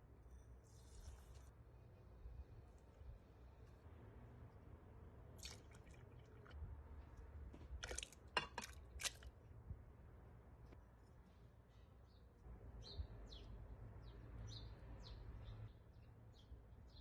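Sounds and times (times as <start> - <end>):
wet squishing and dripping: 5.4 - 6.6, 7.8 - 9.4.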